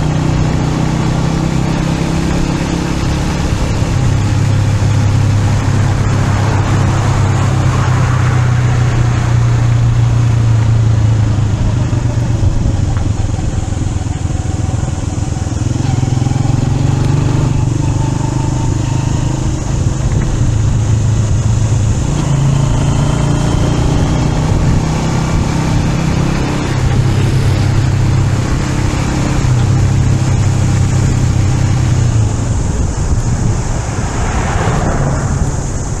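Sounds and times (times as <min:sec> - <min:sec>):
road noise: 0:00.0 - 0:36.0
vehicle engine running: 0:00.0 - 0:36.0.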